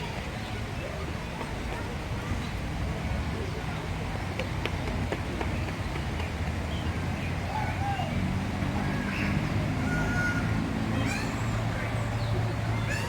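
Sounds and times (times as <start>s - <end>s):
low traffic rumble: 0.0s - 13.0s
birds chirping: 4.4s - 13.0s
low curved bird call: 8.8s - 13.0s.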